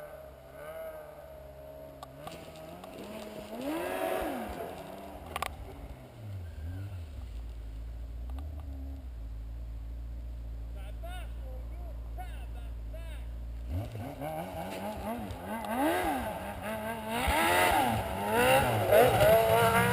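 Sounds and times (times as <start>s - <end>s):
snowmobile engine revving: 0.0s - 7.2s, 12.1s - 19.9s.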